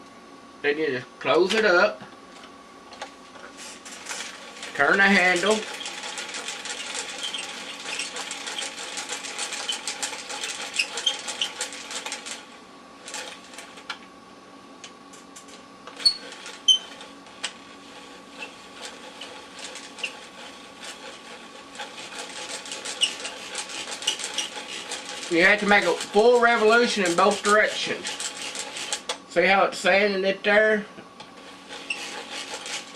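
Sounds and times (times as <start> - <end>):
abrasive wheel rasping on disc: 3.4 - 12.5, 15.9 - 29.2, 31.3 - 32.9.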